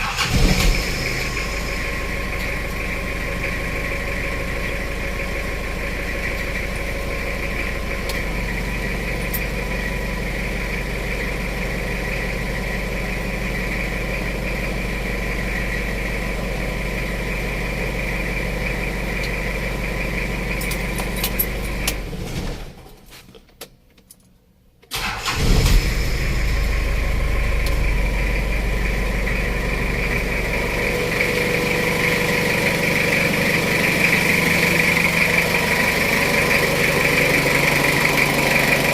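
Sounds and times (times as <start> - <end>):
starter cranking engine: 0.0 - 1.3, 24.9 - 26.0
car engine idling: 0.0 - 22.2, 24.9 - 38.9.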